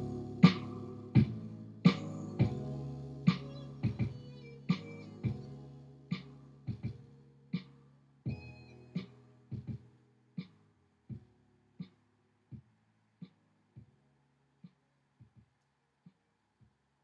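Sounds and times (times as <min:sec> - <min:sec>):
hip-hop instrumental beat: 0:00.0 - 0:09.9.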